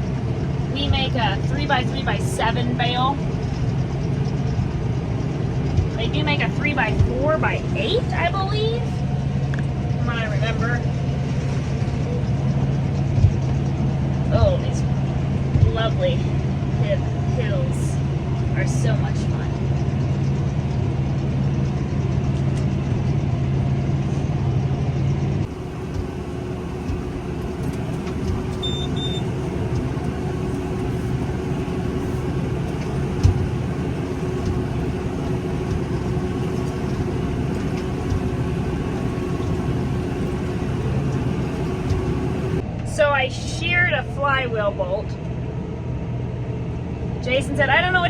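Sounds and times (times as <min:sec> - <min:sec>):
tractor engine running: 0:00.0 - 0:42.6
rough machine hum: 0:25.4 - 0:42.6
double beep: 0:28.6 - 0:29.4.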